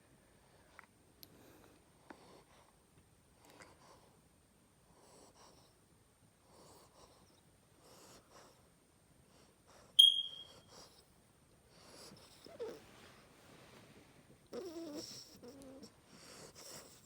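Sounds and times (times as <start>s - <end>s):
high-pitched squeak: 10.0s - 10.6s
pet snoring softly: 14.5s - 17.0s.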